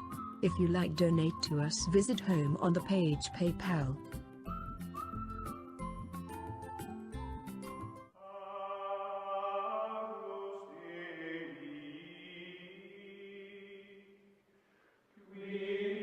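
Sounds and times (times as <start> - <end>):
choir-like chant of held notes: 8.2 - 14.2, 15.2 - 16.0.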